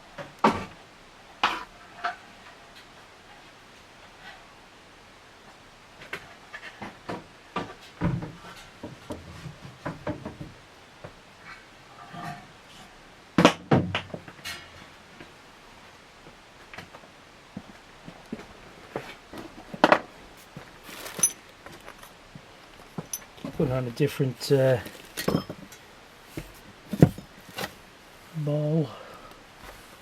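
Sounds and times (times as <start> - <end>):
packaging rustling: 20.4 - 22.1, 24.4 - 25.4
clicks and knocks of handled parts: 20.9 - 22.2, 22.8 - 23.6.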